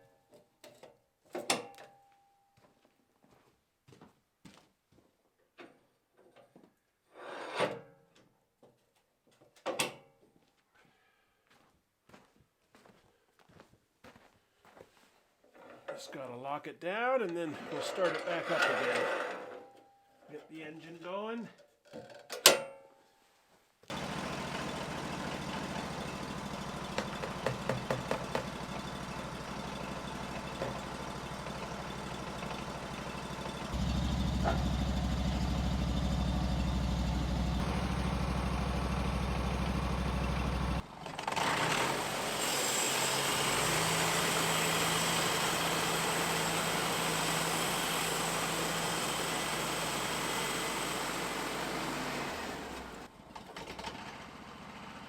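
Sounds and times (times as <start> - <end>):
gas engine running: 23.9 - 53.1.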